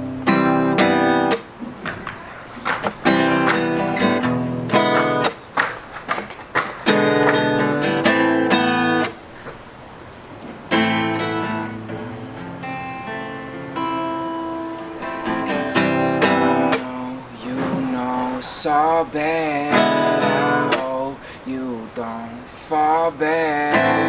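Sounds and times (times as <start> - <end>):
strummed electric guitar chords: 0.0 - 1.6, 2.8 - 5.5, 6.8 - 9.2, 10.7 - 18.1, 19.6 - 21.0, 23.7 - 24.0.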